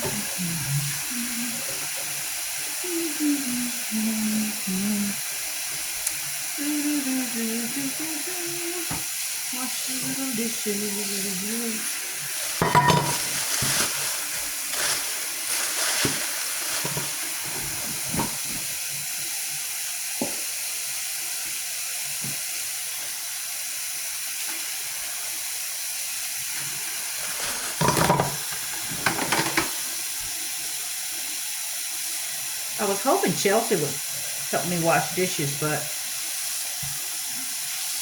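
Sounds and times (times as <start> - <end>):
tap running into sink: 8.8 - 9.1, 12.6 - 14.0, 14.7 - 19.1, 20.1 - 20.6, 22.1 - 22.6, 26.5 - 30.4
dishes knocking and clattering: 12.6 - 13.8, 16.8 - 18.7, 27.7 - 29.8.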